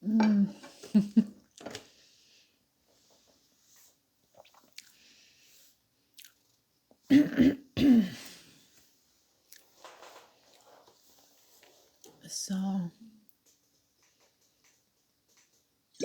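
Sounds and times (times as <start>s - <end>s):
woman chewing: 4.3s - 5.1s, 6.2s - 6.4s.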